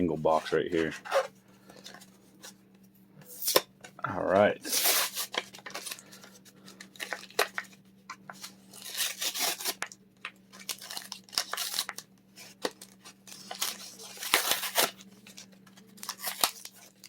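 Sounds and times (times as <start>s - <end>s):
packaging ripping and crinkling: 4.6s - 7.8s, 8.4s - 17.0s.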